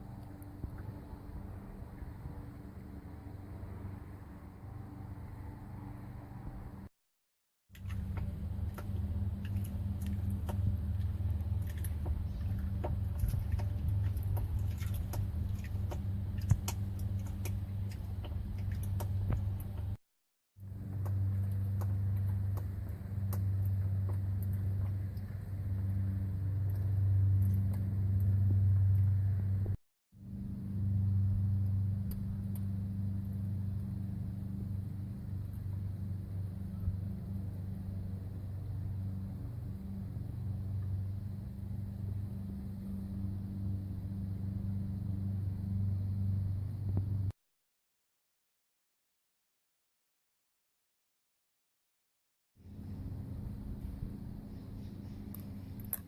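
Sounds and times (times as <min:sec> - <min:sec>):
van engine humming: 0:07.8 - 0:20.0.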